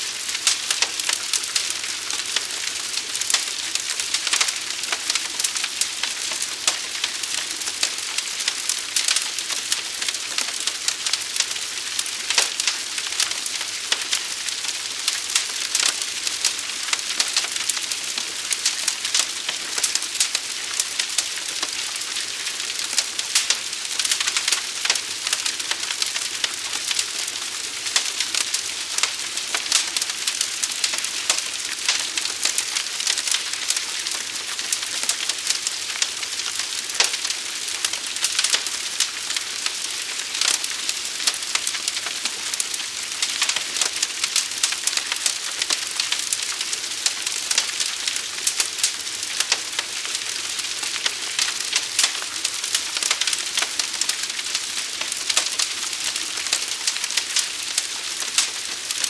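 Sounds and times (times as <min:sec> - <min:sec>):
fire crackling: 0:00.0 - 0:59.0.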